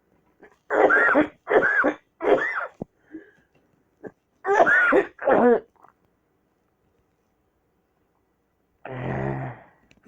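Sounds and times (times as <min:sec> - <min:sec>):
person coughing: 0:00.7 - 0:02.8, 0:04.0 - 0:05.7.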